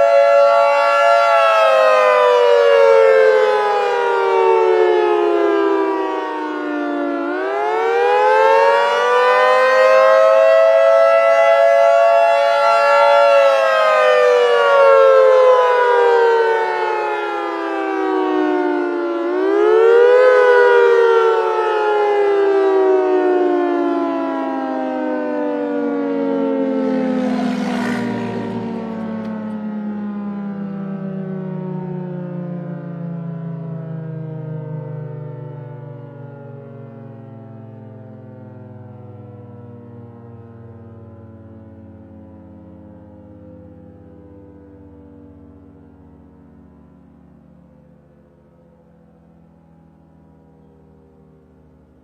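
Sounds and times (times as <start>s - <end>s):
emergency siren wailing: 0.0s - 52.0s.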